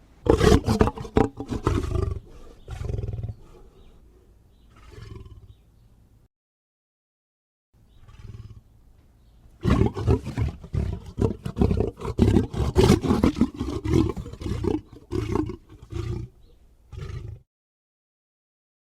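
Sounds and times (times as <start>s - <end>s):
faint low breath: 2.2s - 2.7s, 3.3s - 4.6s.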